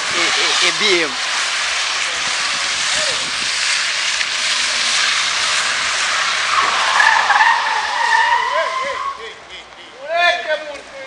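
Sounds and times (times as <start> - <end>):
car engine and tyre noise: 0.0 - 11.0
tyre squeal: 4.4 - 9.4.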